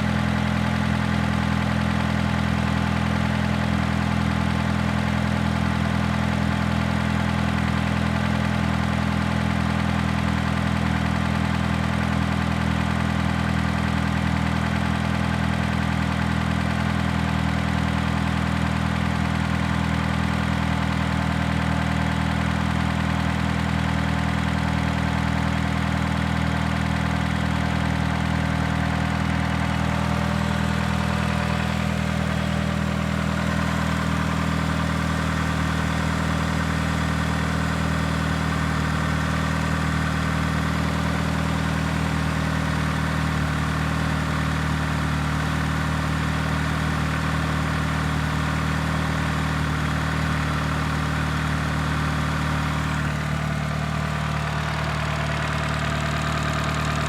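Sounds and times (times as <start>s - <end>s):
car engine idling: 0.0s - 57.0s.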